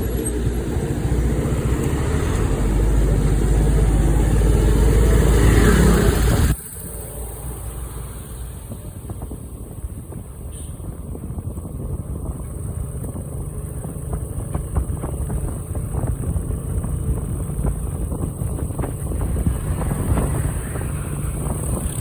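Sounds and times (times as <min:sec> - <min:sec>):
motorcycle engine rumble: 0:00.0 - 0:22.0
wind buffeting microphone: 0:07.5 - 0:22.0.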